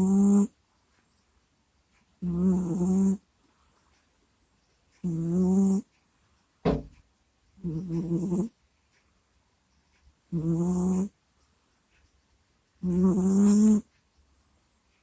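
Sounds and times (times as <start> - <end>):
cat snoring: 0.0 - 0.5, 2.2 - 3.2, 5.0 - 5.9, 7.6 - 8.6, 10.3 - 11.2, 12.8 - 13.9
cat snorting: 0.0 - 0.5, 2.2 - 3.3, 5.0 - 5.9, 7.6 - 8.6, 10.3 - 11.2, 12.8 - 13.9.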